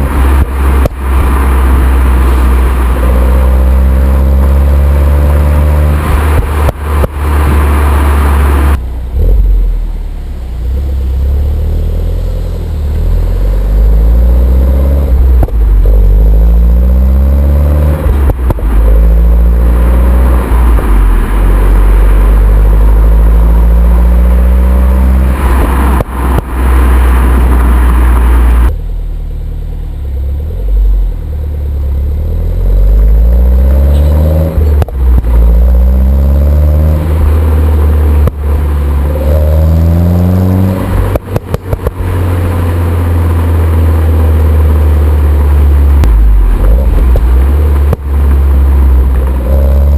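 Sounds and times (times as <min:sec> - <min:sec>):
car engine accelerating: 0:00.0 - 0:49.9
exhaust pops and bangs: 0:06.0 - 0:07.4, 0:18.0 - 0:19.0, 0:33.9 - 0:35.5, 0:40.9 - 0:42.0, 0:45.9 - 0:49.5.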